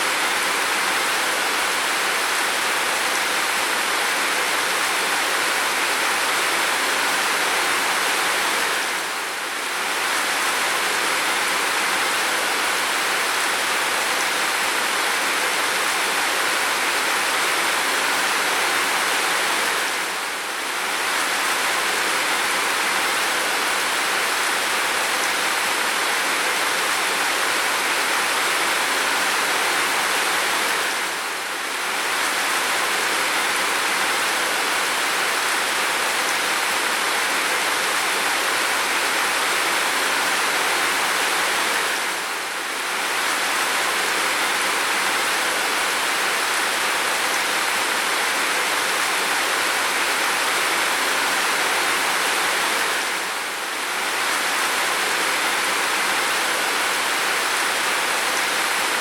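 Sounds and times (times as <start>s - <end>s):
heavy rain hiss: 0.0s - 59.0s.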